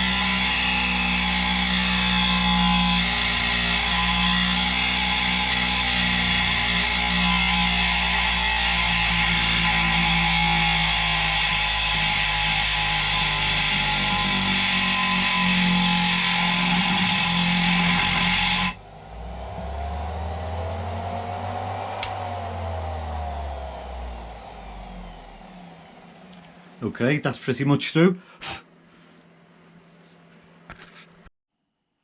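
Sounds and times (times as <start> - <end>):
rotary tool cutting plastic: 0.0 - 18.8.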